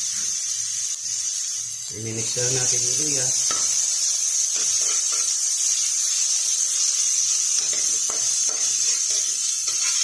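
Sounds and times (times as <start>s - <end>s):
ginger sizzling in oil: 0.0s - 10.0s.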